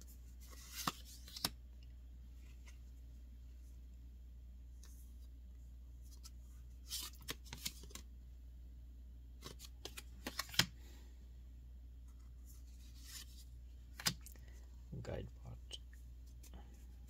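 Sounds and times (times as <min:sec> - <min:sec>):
trading cards snapping and rustling: 0:00.5 - 0:01.6, 0:06.9 - 0:08.0, 0:09.4 - 0:10.8, 0:13.9 - 0:14.4.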